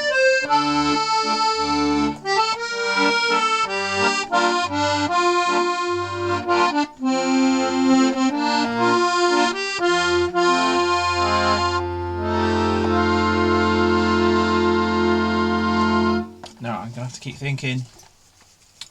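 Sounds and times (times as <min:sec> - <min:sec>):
accordion playing: 0:00.0 - 0:16.8.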